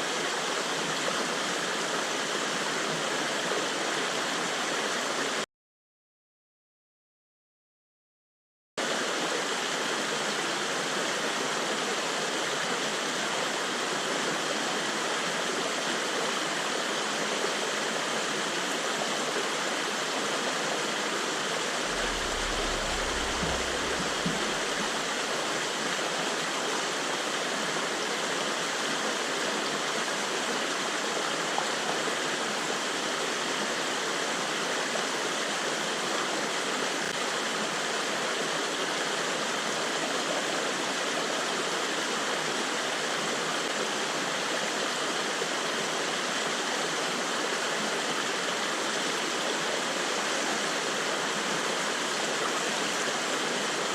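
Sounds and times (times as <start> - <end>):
flowing river water: 0.0 - 5.4, 8.8 - 53.9
low rumble: 21.8 - 25.0.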